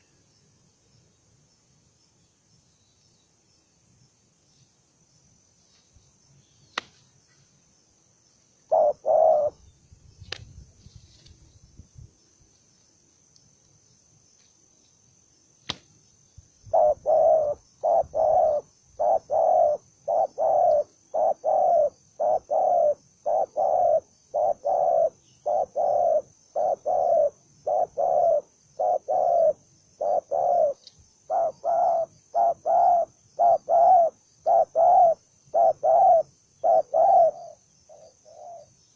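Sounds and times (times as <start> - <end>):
dove cooing: 8.7 - 9.6, 16.7 - 38.7.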